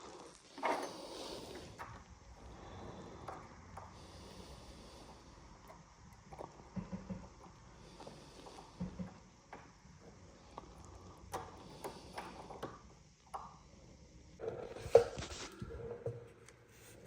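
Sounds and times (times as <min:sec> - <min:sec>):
rubbing and scraping: 0:14.4 - 0:15.9.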